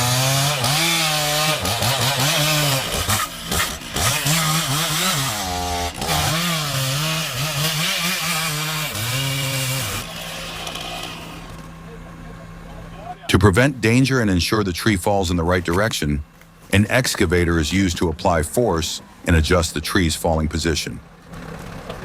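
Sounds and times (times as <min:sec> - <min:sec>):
chainsaw cutting a tree trunk: 0:00.0 - 0:11.8.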